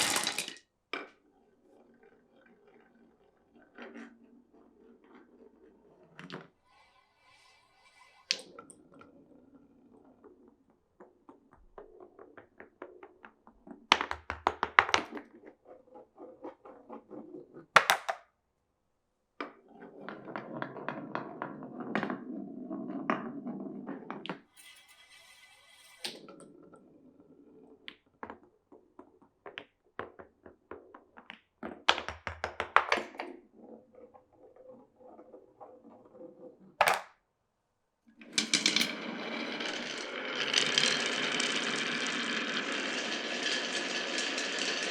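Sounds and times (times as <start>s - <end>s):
marbles clacking on wood: 0.0s - 1.2s, 6.2s - 18.3s, 27.8s - 37.2s, 38.2s - 44.9s
marbles rolling on wood: 0.0s - 18.3s, 19.4s - 37.2s, 38.1s - 44.9s.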